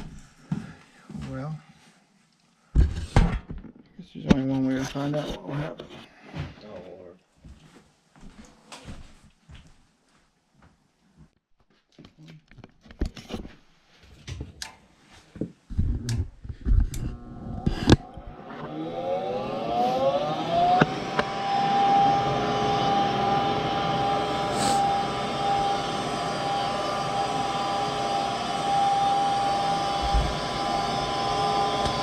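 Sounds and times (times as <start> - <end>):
motor whine: 16.9 - 32.0.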